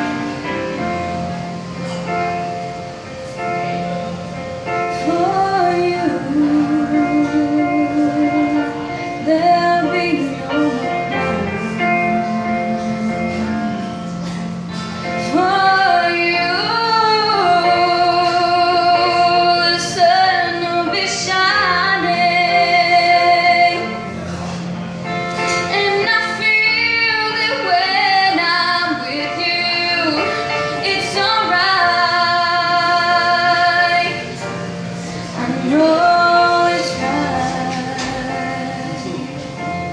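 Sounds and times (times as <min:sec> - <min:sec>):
woman singing with vibrato: 0:04.9 - 0:14.1, 0:15.0 - 0:24.0, 0:25.5 - 0:39.9.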